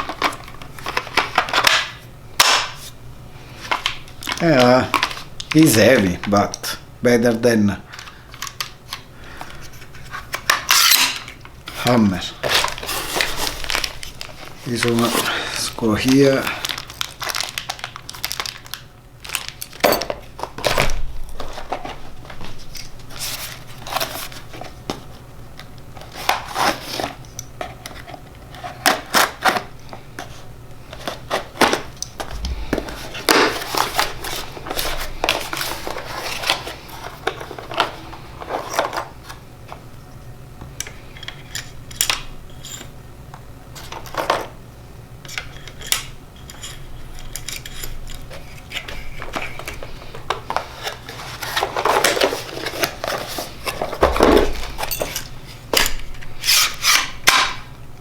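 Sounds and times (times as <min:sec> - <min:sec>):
low room hum: 0:00.0 - 0:58.0
hard objects being handled: 0:31.0 - 0:39.1, 0:45.5 - 0:57.7.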